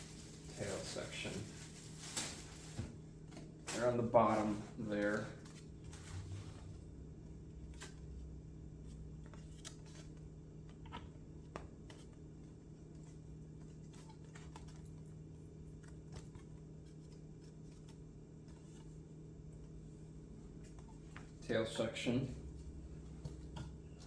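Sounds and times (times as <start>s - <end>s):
packaging rustling and clicking: 0.0s - 2.9s
steady low hum: 0.0s - 24.0s.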